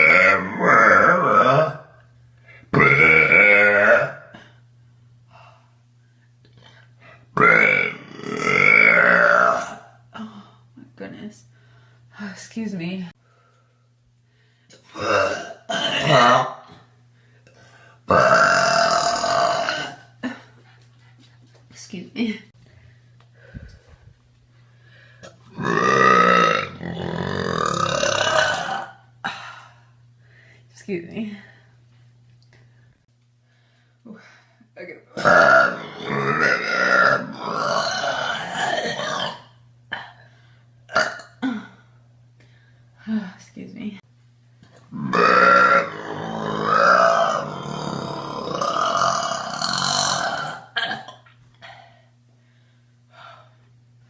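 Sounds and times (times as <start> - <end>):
woman burping: 2.7 - 4.6, 7.4 - 10.4, 14.8 - 16.8, 18.1 - 20.5, 25.5 - 29.6, 35.2 - 40.2, 40.9 - 41.8, 44.9 - 51.3.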